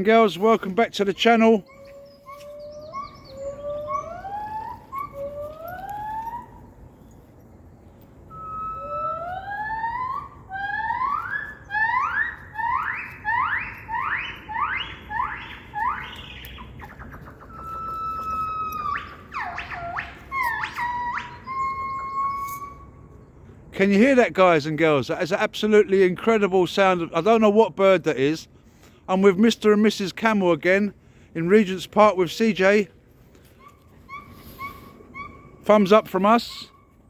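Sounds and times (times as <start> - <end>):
animal whistling calls: 1.6 - 6.7, 8.3 - 23.1, 33.6 - 37.0.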